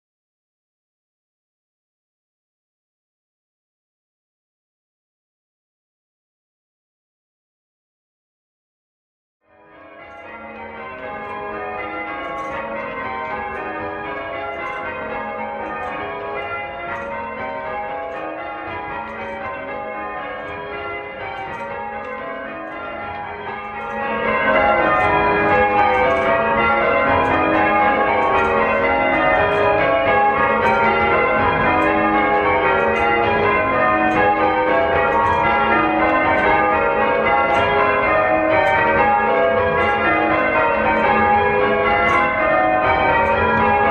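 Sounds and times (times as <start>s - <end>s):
church bells ringing: 9.5s - 43.9s.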